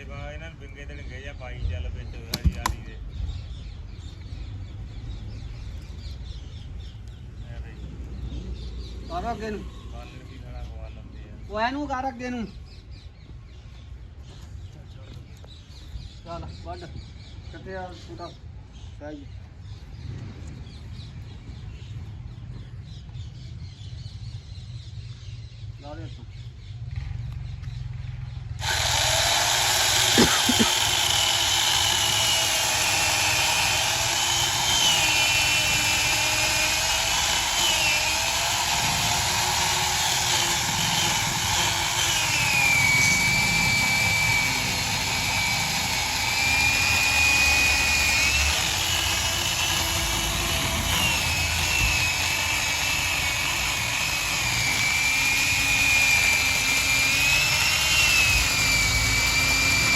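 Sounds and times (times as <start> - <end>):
power saw cutting wood: 2.3 - 2.9, 28.6 - 59.9.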